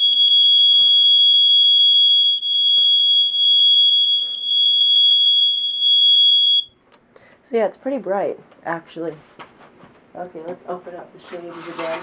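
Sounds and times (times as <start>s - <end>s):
smoke alarm fast pulsing tone: 0.0s - 6.8s.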